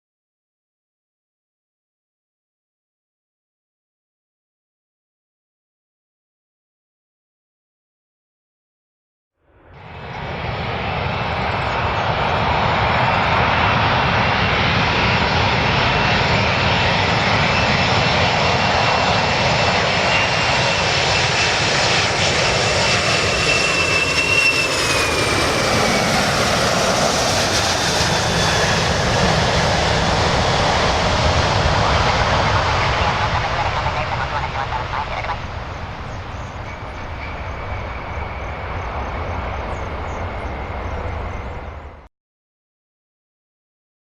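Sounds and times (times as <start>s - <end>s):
airplane engines rushing: 9.4s - 42.1s.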